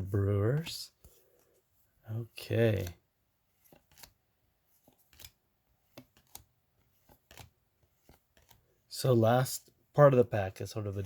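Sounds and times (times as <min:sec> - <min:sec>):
trading cards clicking and flipping: 0:02.4 - 0:08.9.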